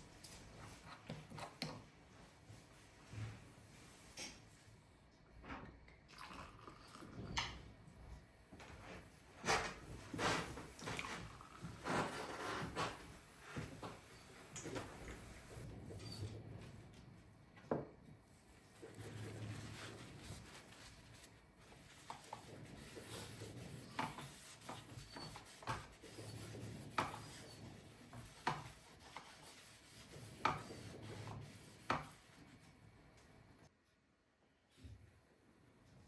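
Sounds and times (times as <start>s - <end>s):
rubbing and handling noises: 9.4s - 16.9s, 18.3s - 32.8s.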